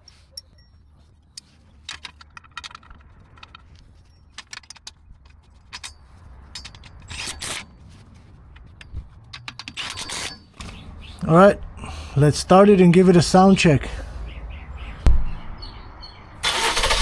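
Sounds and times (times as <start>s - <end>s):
metal tools clinking: 0.0s - 10.9s.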